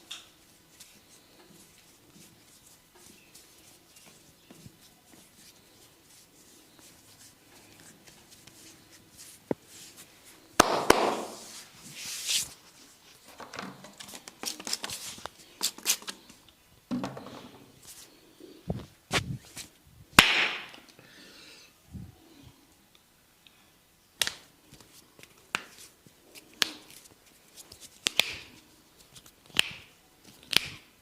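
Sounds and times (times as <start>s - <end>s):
hands rubbing hair and skin: 0.4s - 13.2s, 14.0s - 16.4s, 24.2s - 30.8s
hands slapping and tapping: 10.6s - 11.4s, 24.2s - 25.8s, 26.4s - 27.0s, 27.6s - 28.6s, 29.2s - 30.9s.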